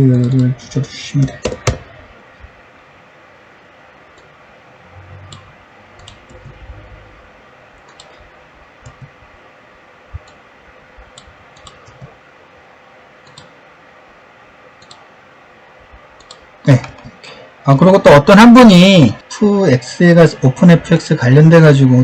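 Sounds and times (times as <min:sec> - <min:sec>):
faint hiss and hum: 0:00.0 - 0:22.0
computer mouse clicking: 0:00.2 - 0:00.6, 0:05.3 - 0:06.6, 0:07.8 - 0:09.2, 0:10.2 - 0:10.4, 0:11.0 - 0:12.2, 0:13.2 - 0:13.6, 0:14.8 - 0:15.1, 0:16.2 - 0:17.1.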